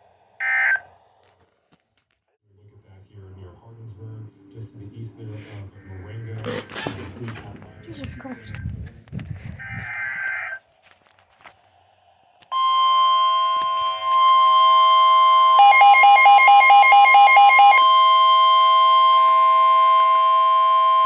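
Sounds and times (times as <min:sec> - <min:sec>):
electronic alarm tone: 0:12.5 - 0:21.0.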